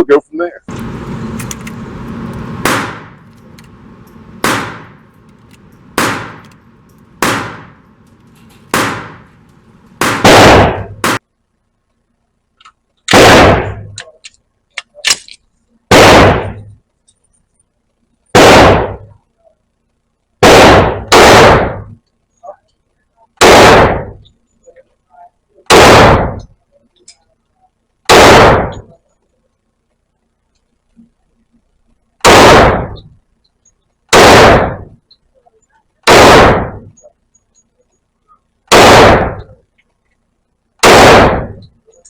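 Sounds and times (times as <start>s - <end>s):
pistol shots echoing indoors: 0.7s - 11.2s, 20.4s - 21.8s, 23.4s - 24.1s, 25.7s - 26.4s, 28.1s - 29.0s, 32.2s - 33.0s, 34.1s - 34.9s, 36.1s - 37.0s, 38.7s - 39.6s, 40.8s - 41.7s.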